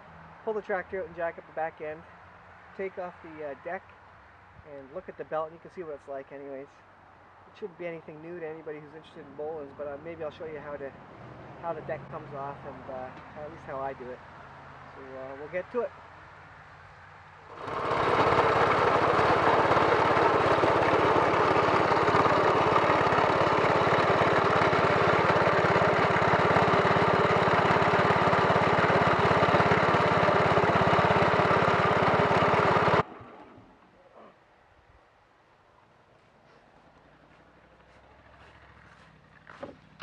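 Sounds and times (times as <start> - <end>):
garden tractor engine running: 17.5 - 33.6.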